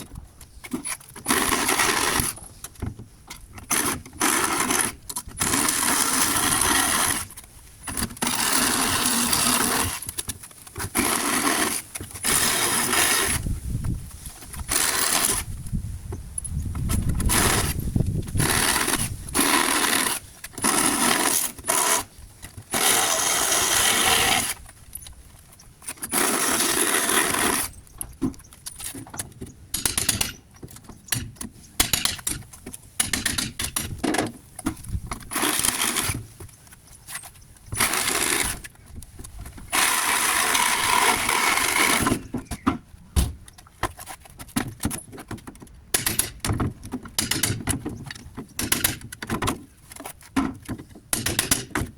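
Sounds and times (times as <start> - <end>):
reciprocating saw cutting: 22.7 - 24.6, 39.7 - 42.3.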